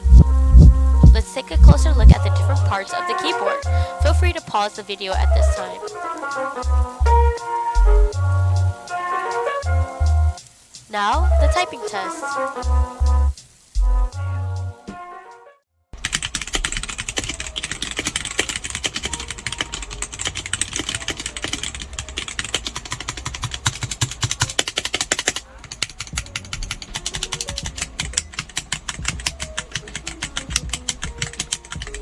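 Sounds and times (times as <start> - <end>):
mechanical keyboard typing: 16.0 - 32.0.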